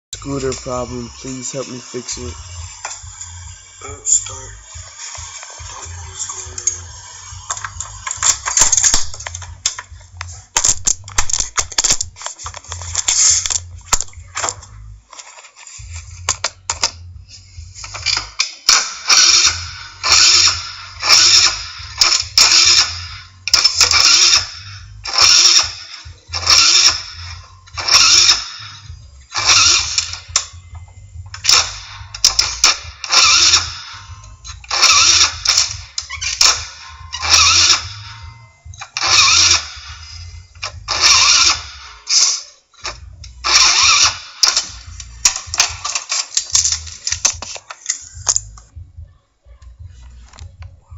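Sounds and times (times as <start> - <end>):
scooter engine cranking: 33.1 - 33.6, 34.7 - 36.6, 40.9 - 42.3, 43.5 - 44.7.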